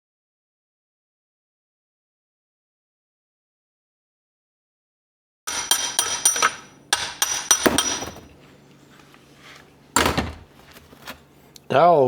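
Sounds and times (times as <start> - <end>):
hammer striking metal punch: 5.5 - 8.4, 10.0 - 10.5.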